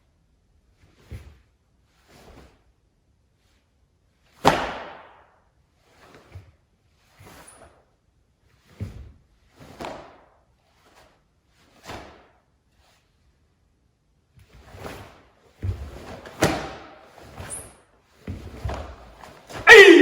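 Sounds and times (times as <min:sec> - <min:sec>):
wooden staff swishing: 0:19.7 - 0:20.0.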